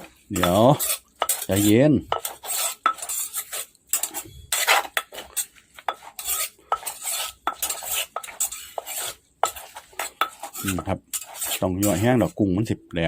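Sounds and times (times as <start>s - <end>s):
pestle knocking in mortar: 2.1s - 3.1s.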